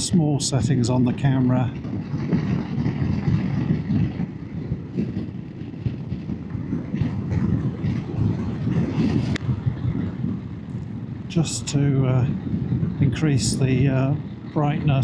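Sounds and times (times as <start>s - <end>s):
motorcycle engine rumbling: 0.0s - 15.0s.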